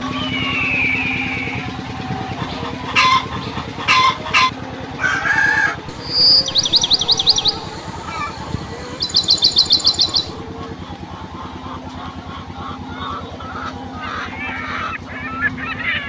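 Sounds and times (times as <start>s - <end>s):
hens calling and squawking: 0.4s - 16.0s
rapid high chirps: 5.9s - 10.5s.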